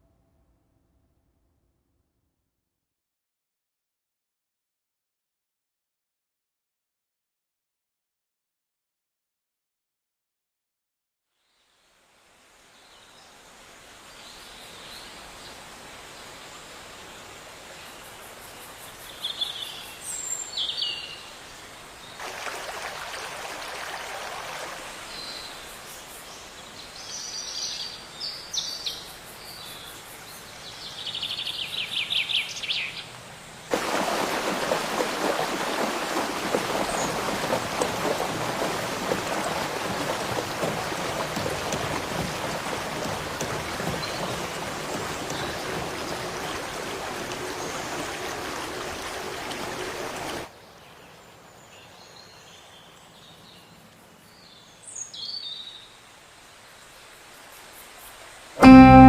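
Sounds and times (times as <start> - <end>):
running water: 12.2 - 32.6, 33.7 - 50.5.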